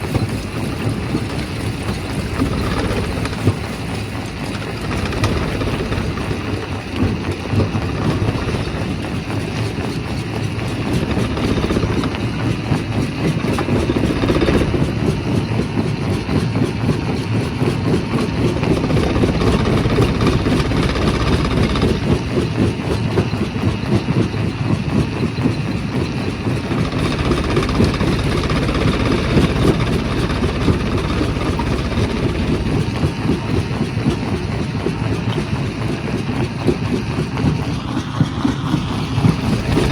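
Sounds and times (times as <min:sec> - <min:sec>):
rock crusher crushing stone: 0:00.0 - 0:09.7, 0:10.6 - 0:15.5, 0:17.8 - 0:22.8, 0:26.5 - 0:34.3, 0:38.4 - 0:39.9.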